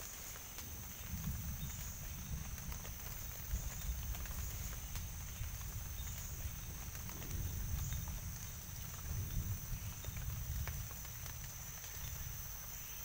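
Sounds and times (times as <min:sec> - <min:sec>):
footsteps on wet forest ground: 0:00.0 - 0:13.0
night insects chirring: 0:00.0 - 0:13.0
low uneven rumble: 0:00.7 - 0:12.8.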